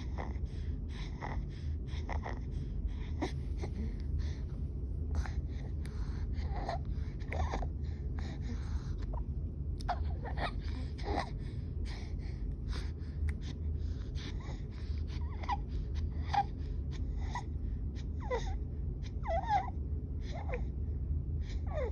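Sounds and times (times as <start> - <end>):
baby whimpering cries: 19.2 - 20.7.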